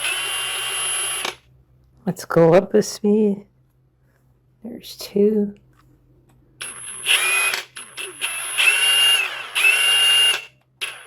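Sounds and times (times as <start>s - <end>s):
impact wrench motor whine: 0.0s - 1.4s, 6.6s - 11.0s.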